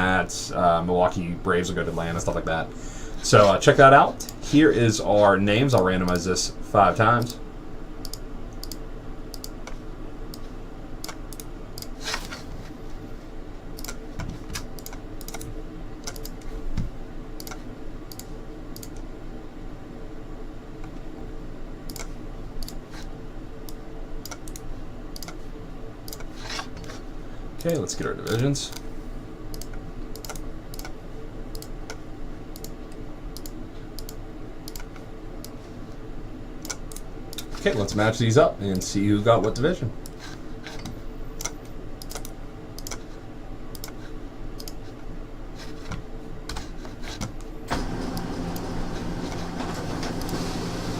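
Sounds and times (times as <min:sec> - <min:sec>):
faint steady hum: 0:00.0 - 0:50.9
keyboard and mouse clicks: 0:08.0 - 0:12.4, 0:13.8 - 0:16.5, 0:17.4 - 0:19.1, 0:21.9 - 0:25.4, 0:26.1 - 0:27.0, 0:29.5 - 0:35.6, 0:36.6 - 0:37.6, 0:39.4 - 0:43.1, 0:43.7 - 0:44.0, 0:44.6 - 0:44.9.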